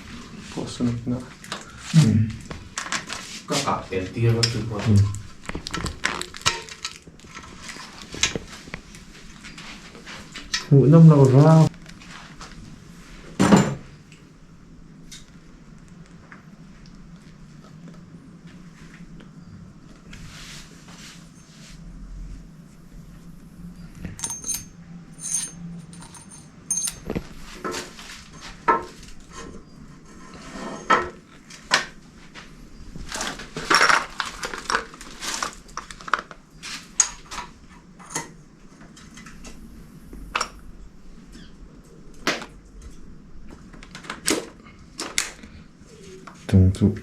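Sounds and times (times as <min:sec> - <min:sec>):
metallic clinks of hand tools: 0:24.2 - 0:27.3.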